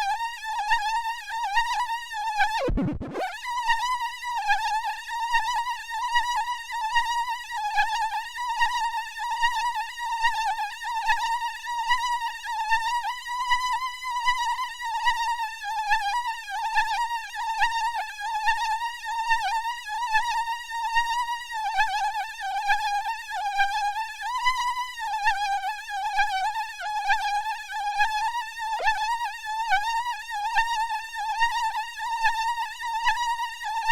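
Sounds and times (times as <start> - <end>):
mosquito whine: 19.5 - 33.9.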